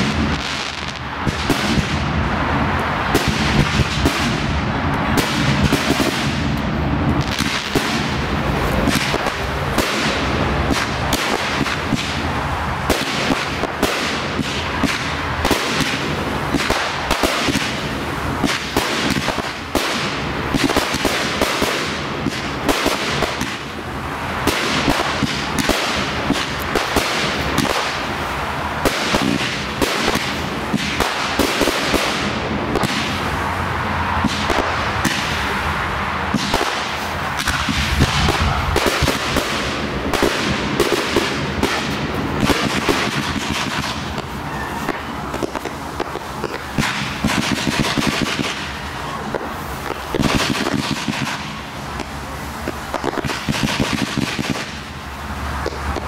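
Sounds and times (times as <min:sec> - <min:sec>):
fireworks bursting: 0:00.0 - 0:56.0.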